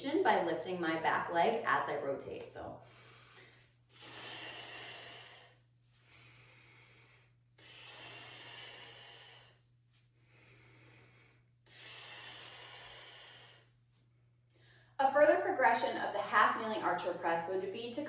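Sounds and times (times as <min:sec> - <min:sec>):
woman breathing hard: 0:02.8 - 0:15.0.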